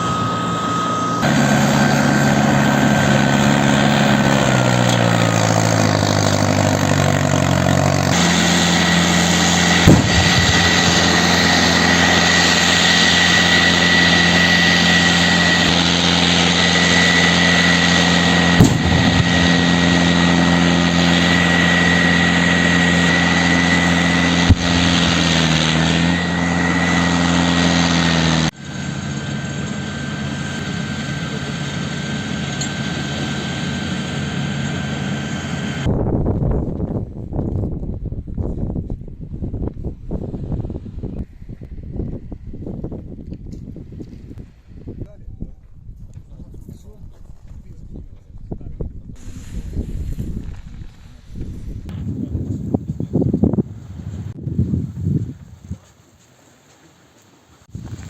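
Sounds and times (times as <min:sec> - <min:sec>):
high steady whine: 0:00.0 - 0:36.8
large engine running: 0:00.0 - 0:37.7.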